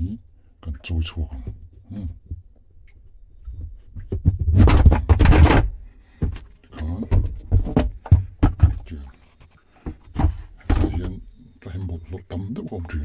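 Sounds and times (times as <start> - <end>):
metal parts knocking and clattering: 3.9 - 6.4.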